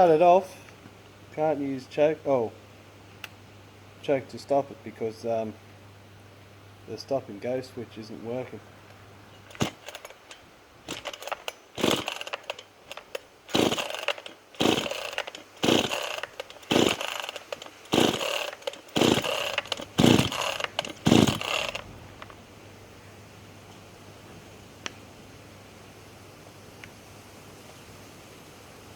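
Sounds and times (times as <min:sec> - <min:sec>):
chainsaw engine turning over: 0:09.4 - 0:22.4
chainsaw recoil starter pulls: 0:09.4 - 0:22.4.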